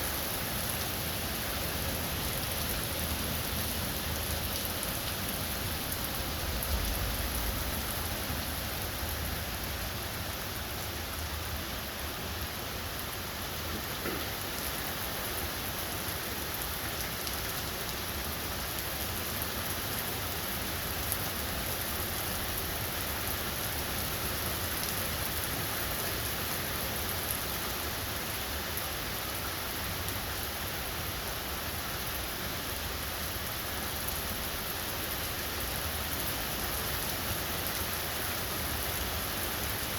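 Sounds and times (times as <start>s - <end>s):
heavy rain pouring: 0.0s - 39.9s.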